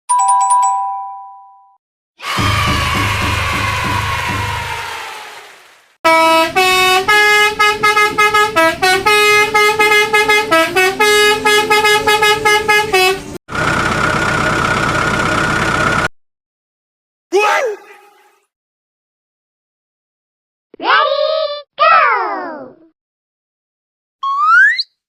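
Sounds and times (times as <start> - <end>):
cartoon horn honking tune: 6.1 - 13.4
sliding sound effect: 24.2 - 24.9.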